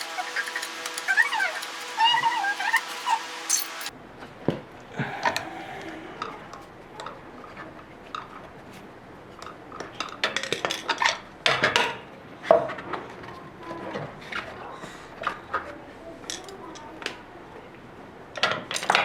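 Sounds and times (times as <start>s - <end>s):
metal tools clinking: 0.0s - 3.9s.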